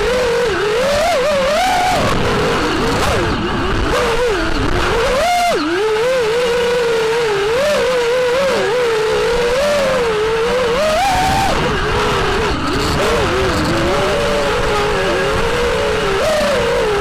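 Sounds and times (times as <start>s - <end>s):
quadcopter motors whining: 0.0s - 17.0s
steady rushing noise: 0.0s - 17.0s.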